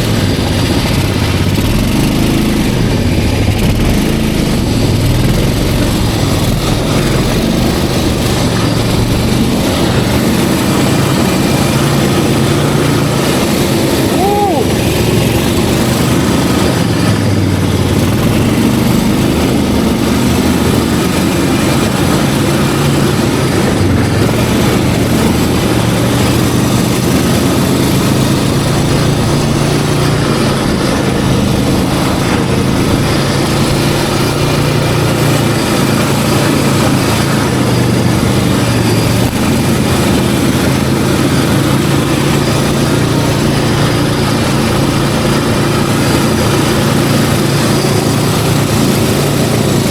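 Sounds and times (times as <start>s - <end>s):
snowmobile engine running: 0.0s - 49.9s.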